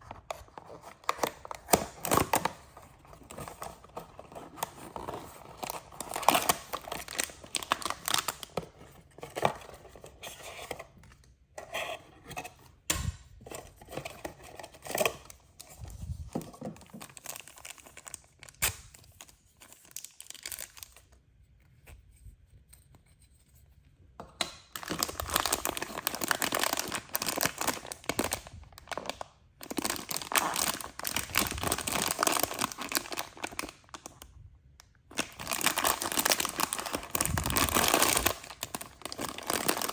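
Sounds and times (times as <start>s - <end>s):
packaging tearing and crinkling: 0.4s - 8.6s, 16.9s - 21.1s, 24.7s - 34.2s, 35.1s - 39.9s.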